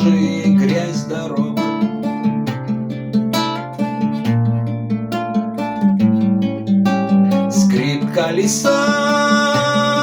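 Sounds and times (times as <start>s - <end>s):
person singing: 0.0s - 1.8s, 7.5s - 10.0s
fingerpicked acoustic guitar: 0.0s - 10.0s.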